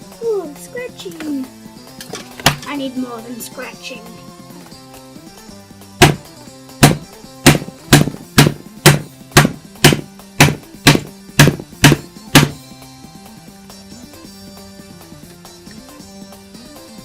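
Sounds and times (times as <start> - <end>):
background music: 0.0 - 17.0
hard strikes on circuit board: 6.0 - 12.6.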